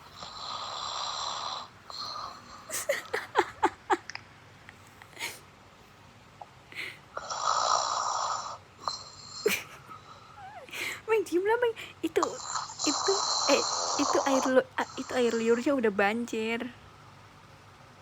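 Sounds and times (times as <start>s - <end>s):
cat snoring: 0.0s - 2.7s, 7.2s - 9.5s, 12.2s - 15.5s.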